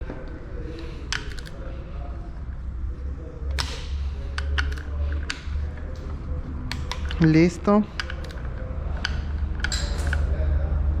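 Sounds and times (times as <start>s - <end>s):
steady low hum: 0.0s - 11.0s
ratchet clicking: 0.8s - 1.6s, 3.5s - 5.8s, 6.7s - 10.2s.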